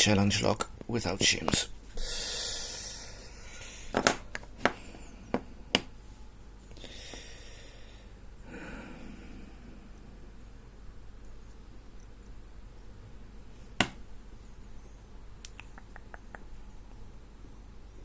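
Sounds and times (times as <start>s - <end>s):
breathy exhale: 2.0s - 3.9s, 6.8s - 10.0s.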